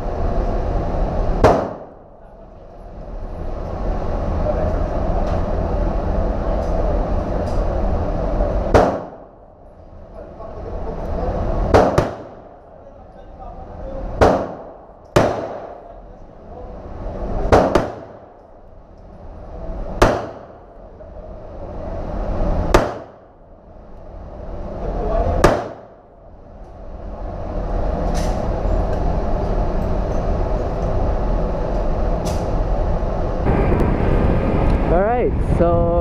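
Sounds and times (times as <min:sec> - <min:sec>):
steady noise: 0:00.0 - 0:36.0
gunshots indoors: 0:01.4 - 0:02.1, 0:08.6 - 0:09.4, 0:11.6 - 0:12.6, 0:14.1 - 0:16.0, 0:17.4 - 0:18.6, 0:19.9 - 0:20.8, 0:22.7 - 0:23.4, 0:25.4 - 0:26.1.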